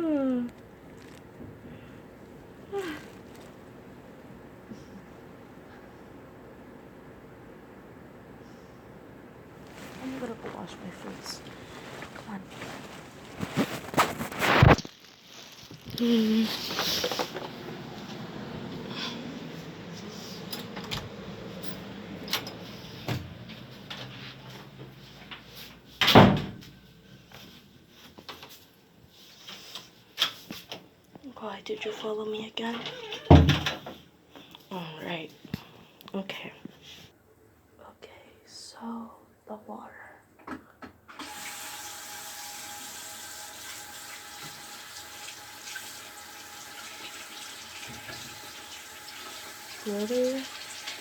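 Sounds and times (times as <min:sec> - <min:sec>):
door shutting with heavy thud: 0:26.0 - 0:26.6, 0:33.3 - 0:33.8
tap water running into sink: 0:41.2 - 0:51.0.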